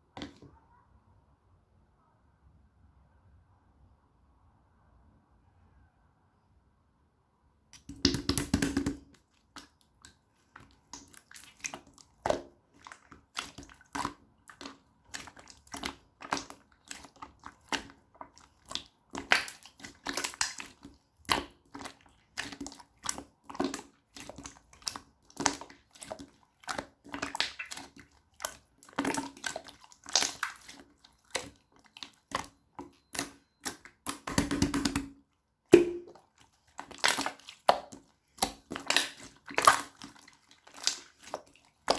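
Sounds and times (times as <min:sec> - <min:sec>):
slime crackling and squishing: 0:07.8 - 0:35.1, 0:35.7 - 0:41.9.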